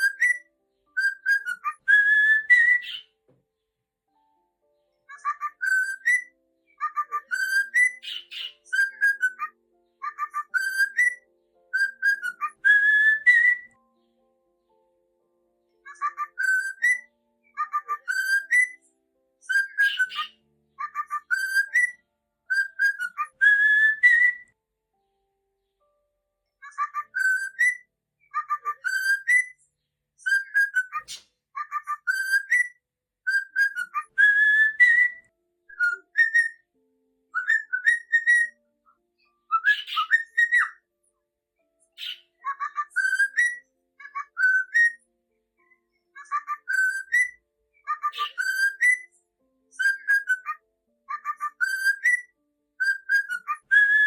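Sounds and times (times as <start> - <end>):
cockatiel whistling: 0.0 - 0.4, 1.0 - 3.1, 5.1 - 11.2, 11.8 - 13.7, 15.9 - 18.8, 19.4 - 24.5, 26.6 - 27.8, 28.4 - 29.6, 30.2 - 36.6, 37.4 - 38.6, 39.5 - 40.8, 42.0 - 45.0, 46.2 - 49.1, 49.8 - 54.0.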